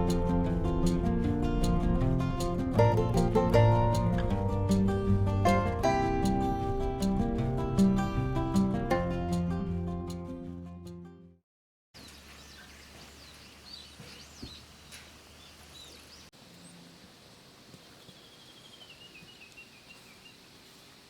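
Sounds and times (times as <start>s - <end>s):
guitar background music: 0.0s - 11.4s
birds chirping and trilling: 12.0s - 17.1s, 17.8s - 21.0s
steady outdoor hiss: 12.0s - 21.0s.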